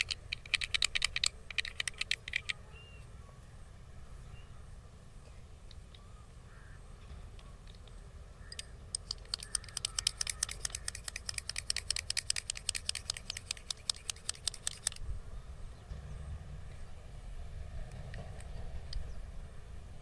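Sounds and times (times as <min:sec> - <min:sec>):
fast sharp clicks: 0:00.0 - 0:02.6, 0:08.5 - 0:15.0.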